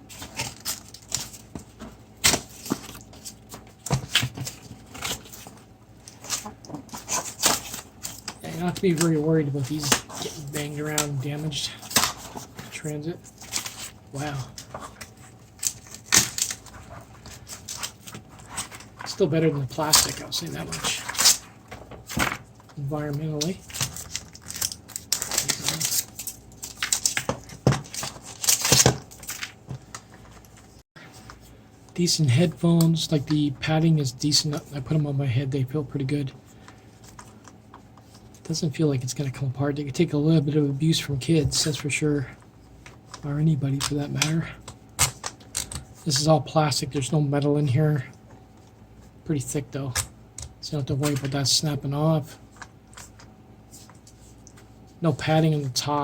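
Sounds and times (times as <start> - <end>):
cardboard packaging being opened: 0.0 - 22.6, 23.4 - 30.6.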